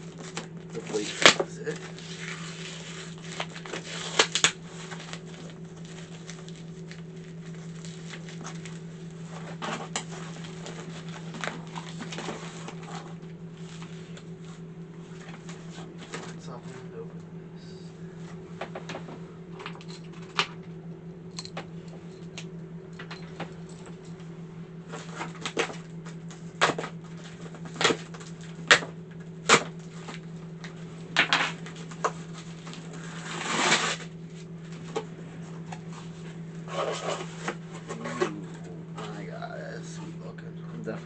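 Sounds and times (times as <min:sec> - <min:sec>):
steady low hum: 0:00.0 - 0:41.0
rustling scraping noise: 0:31.9 - 0:38.6.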